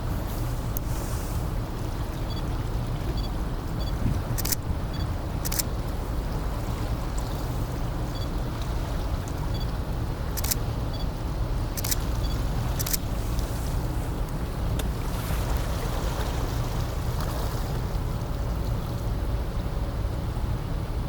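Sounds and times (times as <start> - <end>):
low rumble of a ferry: 0.0 - 21.0
camera shutter clicking: 4.3 - 4.8, 5.4 - 5.7, 10.4 - 10.7, 11.8 - 12.1, 12.8 - 13.1.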